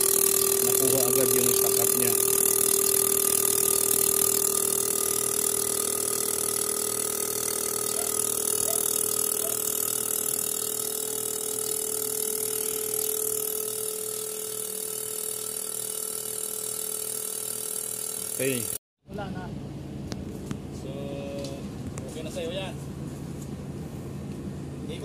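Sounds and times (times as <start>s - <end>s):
injector cleaning machine humming: 0.0s - 18.8s
rapid injector clicking: 0.0s - 18.8s.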